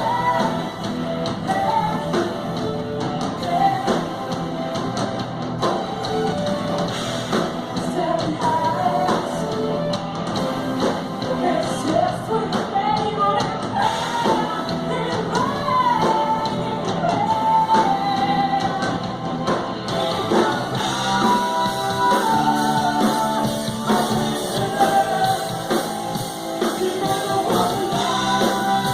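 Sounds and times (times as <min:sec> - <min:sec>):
lead vocal singing: 0:00.0 - 0:28.9
rock and roll band playing: 0:00.0 - 0:28.9.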